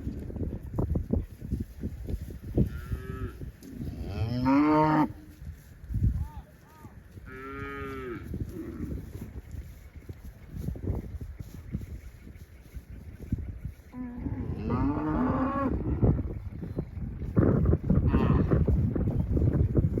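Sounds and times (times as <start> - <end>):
cows mooing: 2.6 - 5.2, 7.3 - 9.2, 13.9 - 16.2, 18.0 - 18.7.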